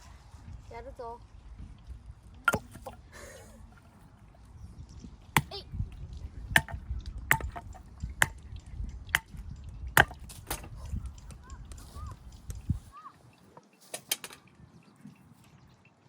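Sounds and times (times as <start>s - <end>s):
axe chopping firewood: 2.5s - 3.0s, 5.4s - 5.8s, 6.5s - 8.4s, 9.1s - 11.1s.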